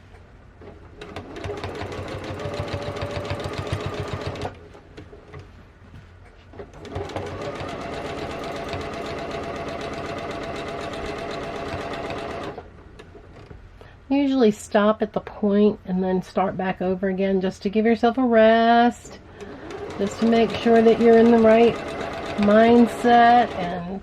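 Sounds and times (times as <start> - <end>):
sewing machine stitching: 0.6 - 4.6, 6.7 - 12.7, 19.4 - 23.8.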